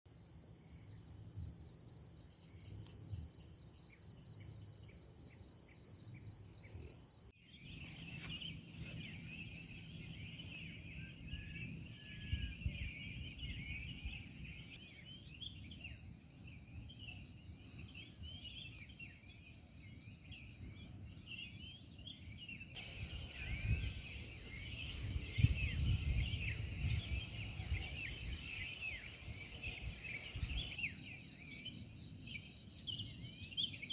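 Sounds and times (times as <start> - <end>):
wind rumble on microphone: 10.7 - 14.8, 22.8 - 31.0
insects trilling: 22.8 - 33.9.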